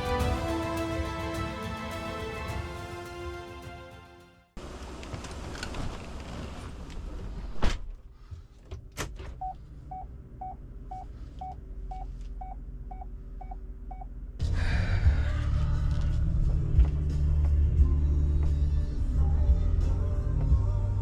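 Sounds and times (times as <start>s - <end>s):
vehicle warning chime beeping: 9.4s - 14.1s
loud low rumble: 14.4s - 21.0s.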